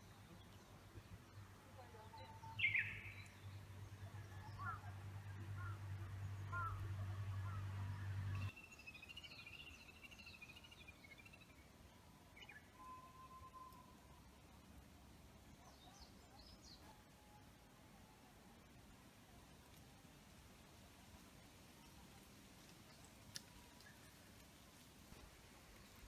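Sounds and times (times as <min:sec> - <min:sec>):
birds chirping and twittering: 0:00.0 - 0:14.4.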